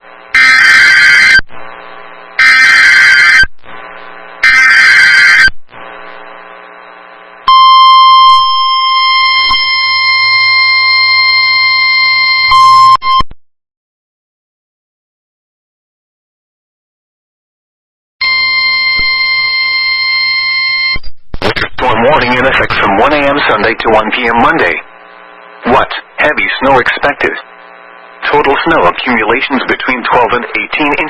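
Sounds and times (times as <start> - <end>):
long steady attention tone: 0.2 - 13.2, 18.2 - 21.0
screeching data bursts: 0.4 - 1.4, 2.4 - 3.5, 4.4 - 5.5.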